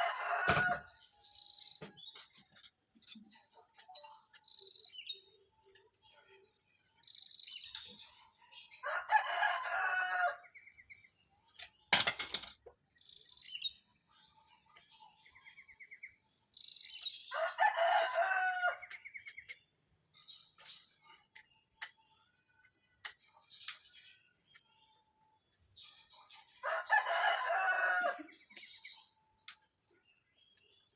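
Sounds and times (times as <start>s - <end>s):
rooster crowing: 0.0s - 0.9s, 8.8s - 10.4s, 17.3s - 18.8s, 26.6s - 28.3s
small birds chirping: 0.0s - 30.9s.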